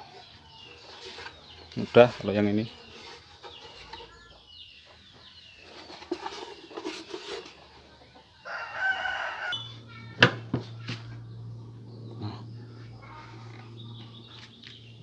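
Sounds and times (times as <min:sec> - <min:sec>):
chicken clucking: 0:00.0 - 0:15.0
rooster crowing: 0:08.4 - 0:10.1
low steady hum: 0:08.5 - 0:15.0.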